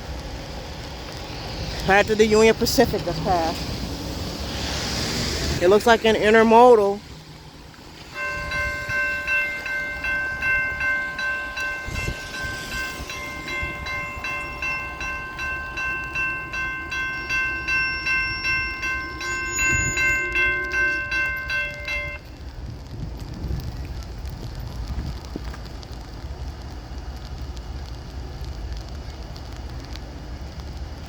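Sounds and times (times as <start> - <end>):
freight train rumble: 0.0 - 31.0
crossing bell ringing: 8.1 - 22.4.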